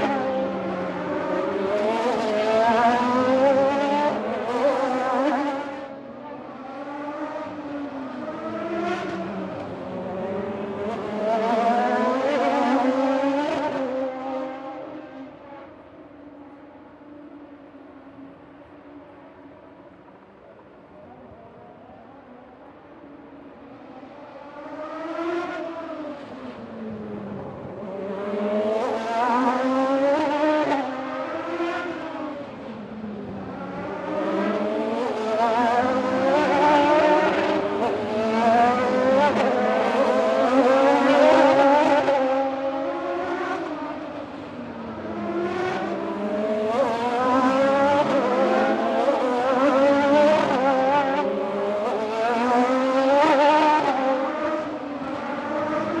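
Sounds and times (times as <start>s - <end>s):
racing motorcycles passing: 24.4s - 56.0s.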